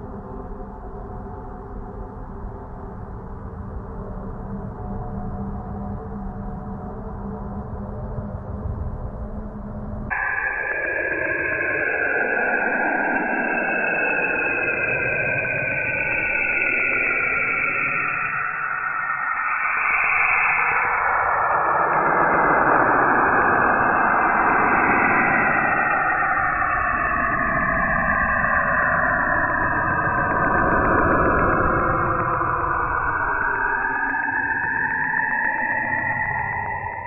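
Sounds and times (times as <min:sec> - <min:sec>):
eerie hissing drone: 0:10.1 - 0:37.0.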